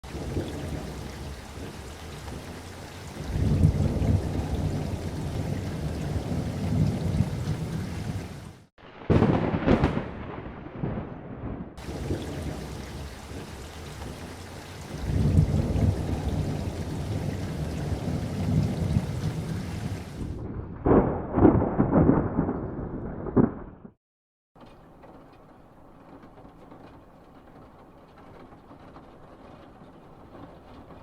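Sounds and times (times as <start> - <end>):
steady rain: 0.0 - 22.5, 24.6 - 31.0
rolling thunder: 0.0 - 24.0.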